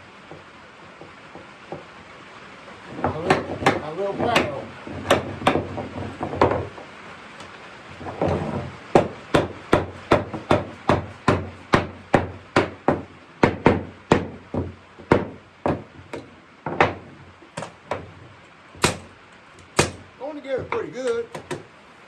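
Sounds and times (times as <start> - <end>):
hammer knocking on wood: 2.9 - 6.9, 8.0 - 18.1, 18.8 - 19.1, 19.8 - 20.0.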